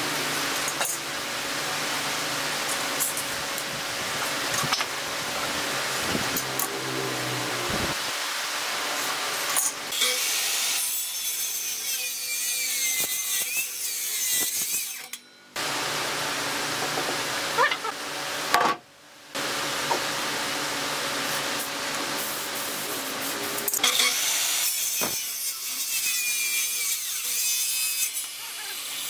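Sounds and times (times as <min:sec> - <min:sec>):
power tool cutting wood: 0:04.2 - 0:08.2, 0:09.1 - 0:18.6, 0:22.9 - 0:29.0.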